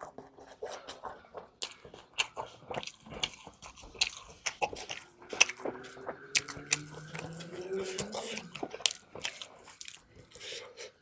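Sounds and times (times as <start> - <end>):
person chewing: 0.1 - 11.0
crunchy bites: 1.0 - 10.6.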